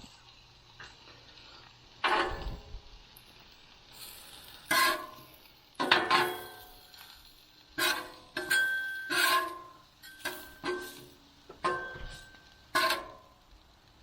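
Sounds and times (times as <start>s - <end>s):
sharp metallic clanks: 7.8s - 13.3s.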